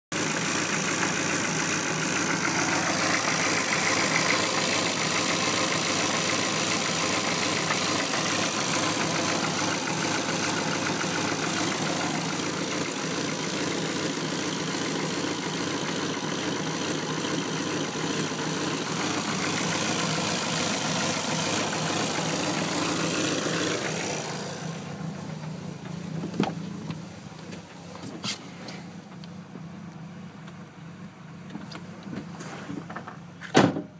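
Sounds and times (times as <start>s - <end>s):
car engine idling roughly: 0.1s - 31.3s.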